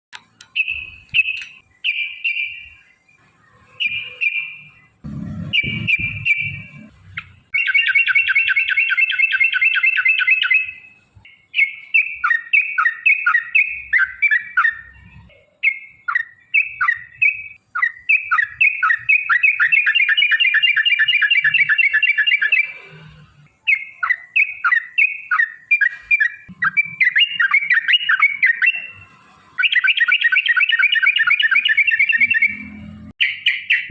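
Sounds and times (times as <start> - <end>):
bulbul singing: 0.2 - 33.9
low thumps: 5.0 - 7.2.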